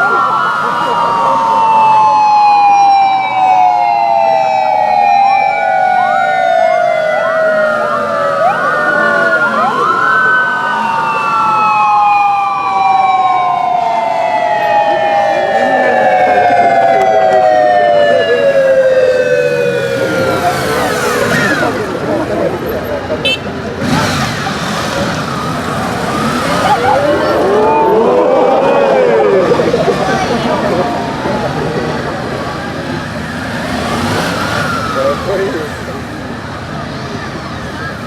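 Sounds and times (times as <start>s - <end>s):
short rising siren sweeps: 0.0s - 21.8s, 25.2s - 32.4s
motorcycle sirens wailing: 0.0s - 38.0s.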